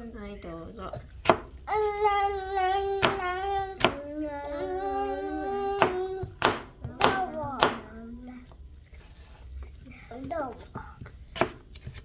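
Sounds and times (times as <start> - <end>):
sharp claps or knocks: 5.8 - 7.9.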